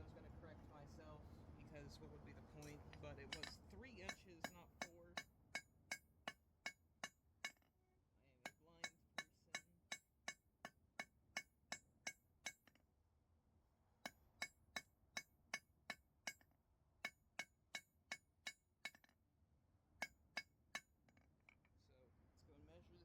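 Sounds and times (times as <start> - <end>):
hammer striking steel on anvil: 2.6 - 6.1, 8.5 - 10.4, 11.0 - 12.8.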